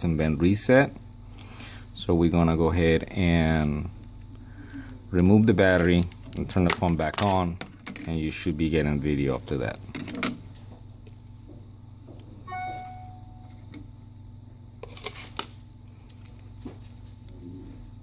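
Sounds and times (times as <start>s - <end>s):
steady low hum: 0.0s - 18.0s
short electronic beep: 12.5s - 13.5s.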